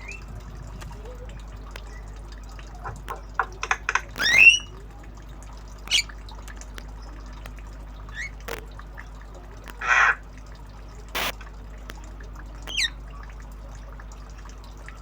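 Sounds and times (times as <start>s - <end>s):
myna clicks: 3.0s - 4.7s
harsh rasping squawk: 4.0s - 4.8s, 5.9s - 6.2s, 8.1s - 8.4s, 9.8s - 10.2s, 12.7s - 13.0s
myna squawks and whistles: 4.2s - 4.8s, 12.7s - 13.0s.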